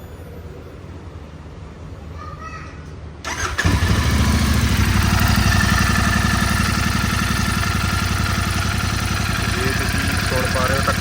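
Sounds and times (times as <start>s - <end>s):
motorcycle engine idling: 3.3s - 11.0s.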